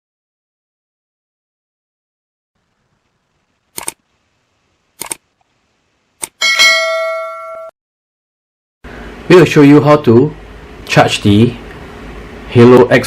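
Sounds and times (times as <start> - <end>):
sharp clicks: 3.7 - 4.0, 5.0 - 5.2, 6.2 - 6.4
bell-like chime: 6.4 - 7.8.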